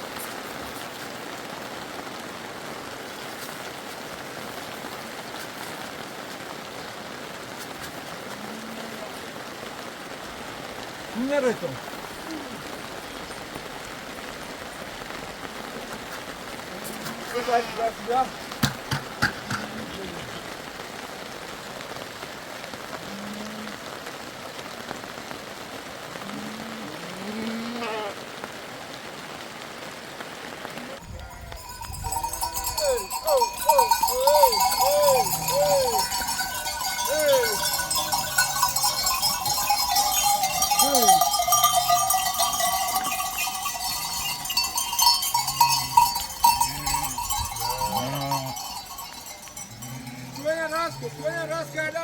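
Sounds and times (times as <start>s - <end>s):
steady rain falling: 0.0s - 52.0s
sheep and goats bleating: 16.7s - 18.6s, 26.2s - 28.2s, 31.6s - 52.0s
livestock bells clanking: 31.0s - 52.0s.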